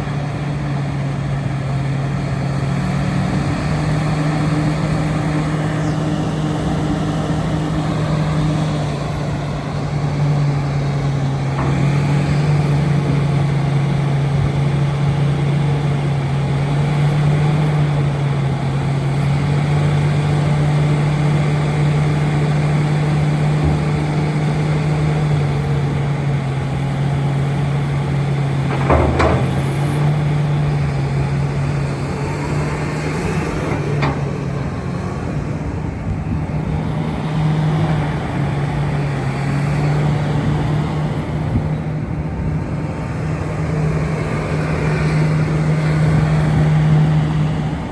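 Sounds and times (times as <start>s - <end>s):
excavator diesel engine running: 0.0s - 47.9s
sharp metallic clank: 28.7s - 31.0s.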